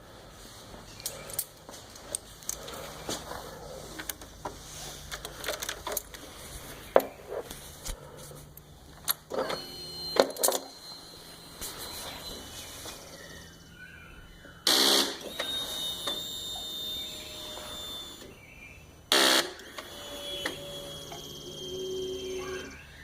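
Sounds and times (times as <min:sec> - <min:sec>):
sharp clicks and rattles: 0:04.0 - 0:06.2
high steady whine: 0:06.3 - 0:23.0.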